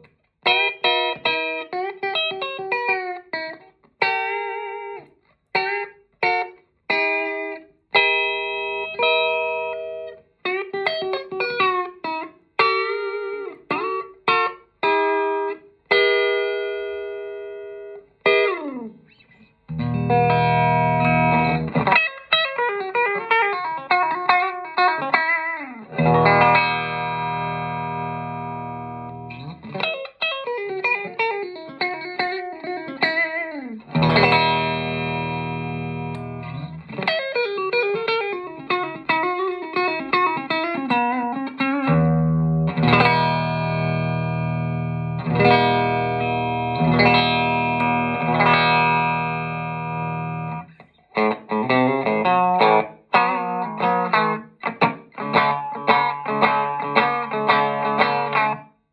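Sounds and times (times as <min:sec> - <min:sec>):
electric guitar through amplifier: 0:00.0 - 0:58.7.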